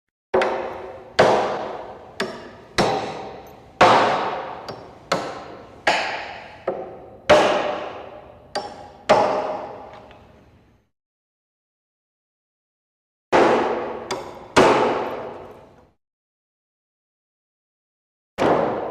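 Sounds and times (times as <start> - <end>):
echoing hammer blows: 0.4 - 9.9.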